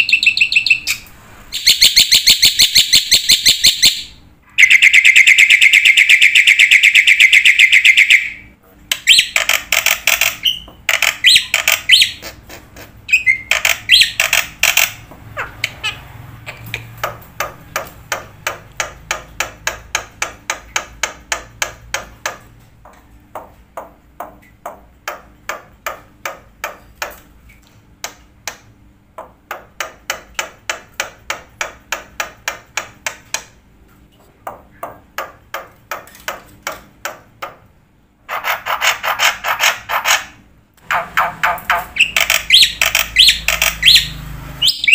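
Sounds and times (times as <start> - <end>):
bird-like chirping: 0.0 - 12.4, 13.0 - 17.6, 40.8 - 44.9.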